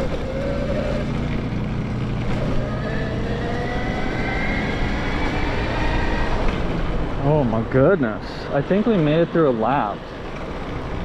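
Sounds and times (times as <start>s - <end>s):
electric bike motor whining: 0.0s - 7.2s
wind rushing: 2.9s - 8.4s.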